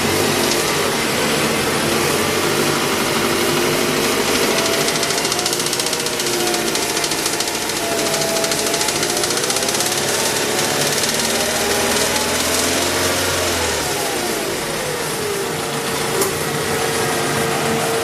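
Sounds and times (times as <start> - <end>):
car engine knocking and idling: 0.0 - 18.0.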